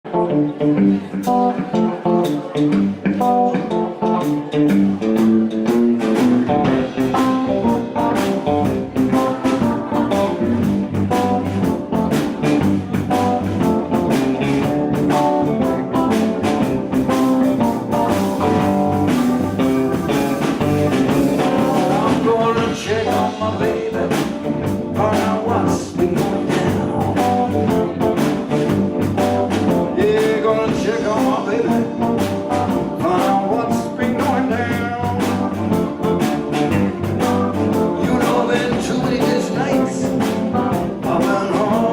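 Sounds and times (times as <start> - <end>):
blues band playing: 0.0 - 41.9
guitar: 0.0 - 41.9.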